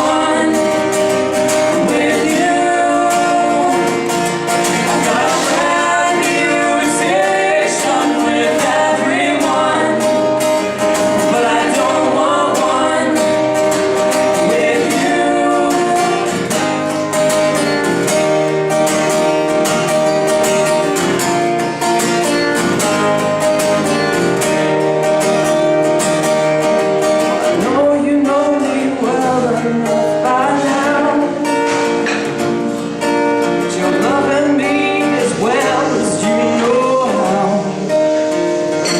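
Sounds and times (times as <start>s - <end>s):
person singing: 0.0s - 17.0s, 27.3s - 31.8s, 33.5s - 38.9s
strummed acoustic guitar: 0.0s - 38.9s.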